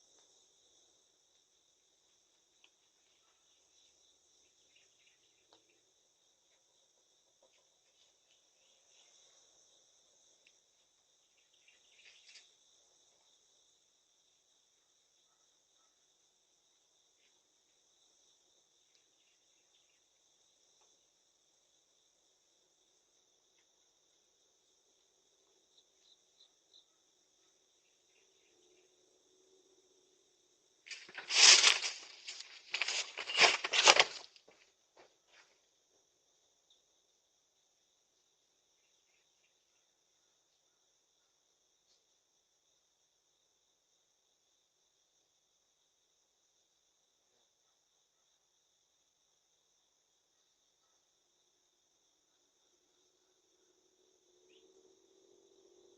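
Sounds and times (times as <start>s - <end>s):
faint insect chirps: 0.0s - 55.9s
insect chorus: 0.0s - 55.9s
faint ticks: 2.5s - 3.4s
loud rustling and scraping: 30.9s - 34.4s.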